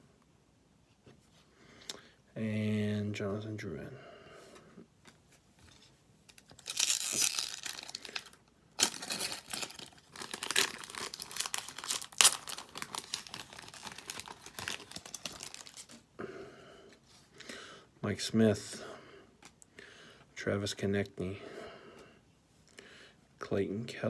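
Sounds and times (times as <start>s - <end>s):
wrapper tearing and crinkling: 6.3s - 16.0s.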